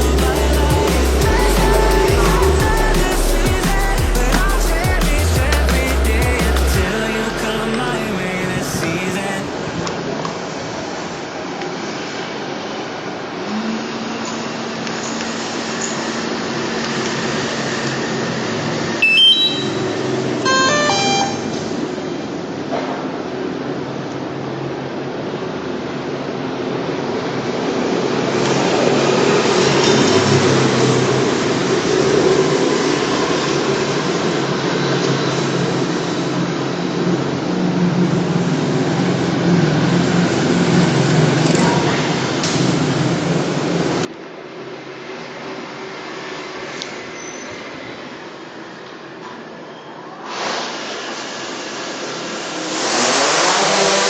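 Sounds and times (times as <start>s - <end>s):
drone propellers buzzing hum: 0.0s - 7.6s
steady noisy hum: 0.0s - 47.1s
electronic beep chimes: 19.0s - 21.6s.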